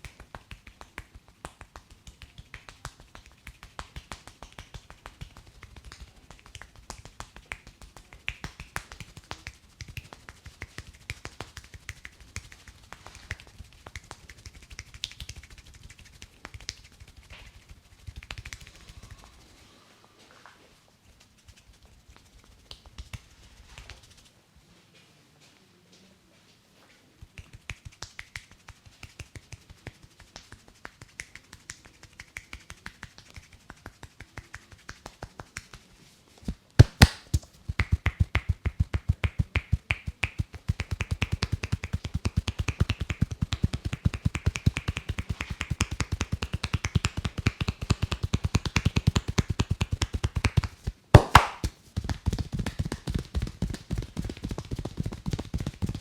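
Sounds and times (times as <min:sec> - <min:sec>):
hands tapping and chopping: 0:36.8 - 0:37.5, 0:44.3 - 0:52.2
loud sharp snaps: 0:36.8 - 0:43.6, 0:49.8 - 0:51.8.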